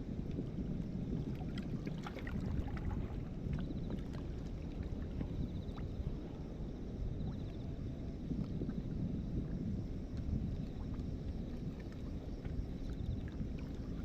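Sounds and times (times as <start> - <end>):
wind rumble on microphone: 0.0 - 14.0
water lapping: 1.2 - 6.2.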